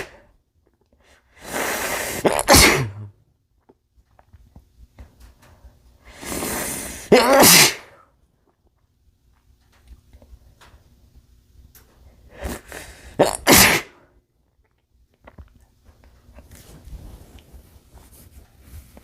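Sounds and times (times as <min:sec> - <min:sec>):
noisy in-breath: 0:01.0 - 0:02.3, 0:05.6 - 0:07.1, 0:12.2 - 0:13.2
faint sniffs: 0:01.1 - 0:02.2, 0:06.1 - 0:07.1
man sneezing: 0:01.5 - 0:03.1, 0:06.2 - 0:08.0, 0:12.4 - 0:14.0.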